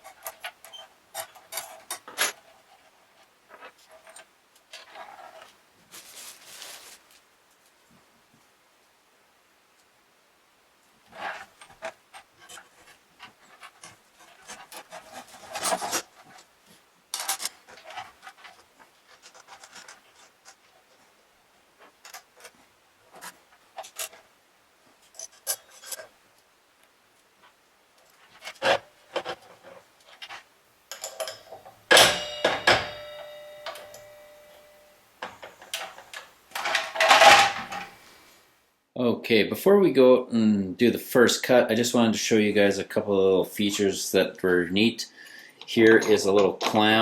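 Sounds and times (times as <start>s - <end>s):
saw parts rubbing and clicking: 28.4s - 38.0s
ringing metal clank: 30.9s - 38.0s.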